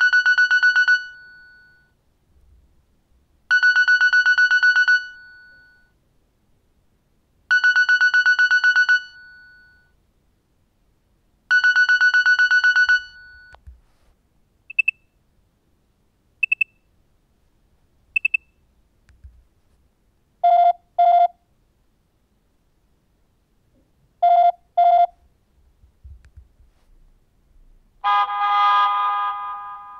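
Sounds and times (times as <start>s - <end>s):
rapid phone alarm beeps: 14.7s - 15.0s, 16.4s - 16.8s, 18.2s - 18.5s
short high beeps: 14.7s - 15.1s, 16.4s - 16.8s, 18.2s - 18.6s
short lower beeps: 14.7s - 15.1s, 16.4s - 16.9s, 18.2s - 18.6s.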